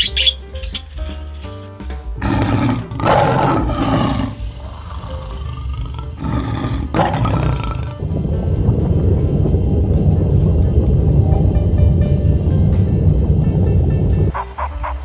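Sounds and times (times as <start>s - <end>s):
large animal roaring: 2.2s - 8.1s
low rumble: 2.2s - 15.0s.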